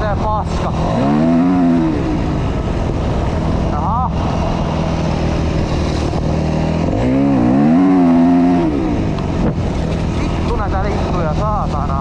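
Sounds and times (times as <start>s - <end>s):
dirt bike engine running: 0.0s - 12.0s.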